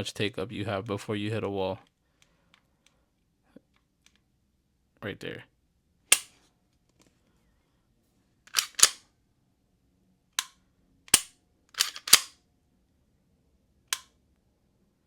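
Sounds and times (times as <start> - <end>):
pistol metallic clicks: 6.1 - 6.4, 8.5 - 9.0, 10.4 - 12.4, 13.9 - 14.2.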